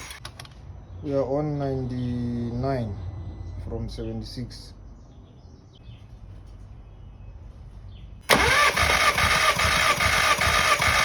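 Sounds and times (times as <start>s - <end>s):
starter motor cranking engine: 0.0s - 0.2s, 8.3s - 11.0s.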